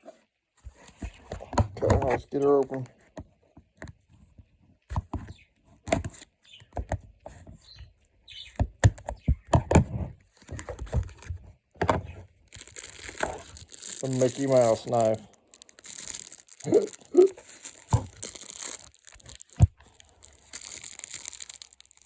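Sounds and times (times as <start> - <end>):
packaging clicking and tapping: 10.4 - 22.0.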